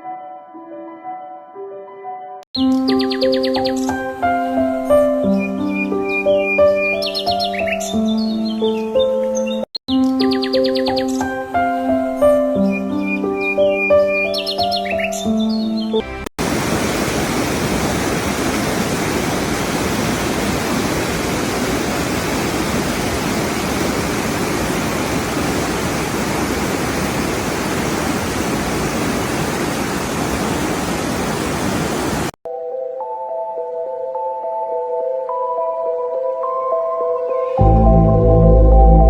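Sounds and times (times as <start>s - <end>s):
music: 0.0s - 16.3s, 32.5s - 39.0s
birdsong: 2.6s - 4.0s, 5.2s - 11.4s, 12.3s - 16.0s
waterfall roaring: 16.4s - 32.3s.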